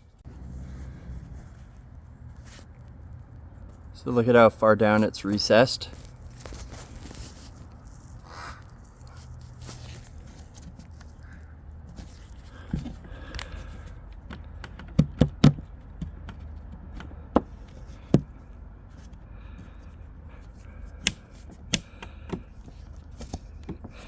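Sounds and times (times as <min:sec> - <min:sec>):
taps and knocks on wood: 0:14.3 - 0:18.4.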